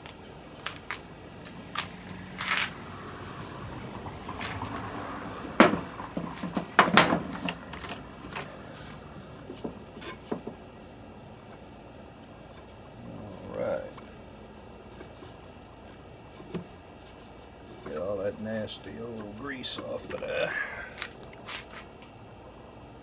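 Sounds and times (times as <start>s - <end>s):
loud clunks: 5.4s - 8.5s.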